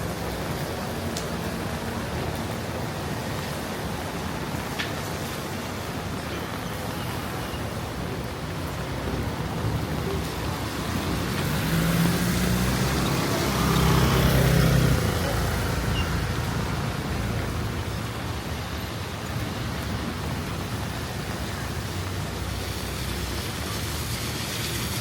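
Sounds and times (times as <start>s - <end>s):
steady rain hiss: 0.0s - 25.0s
vehicle passing by: 10.3s - 17.7s.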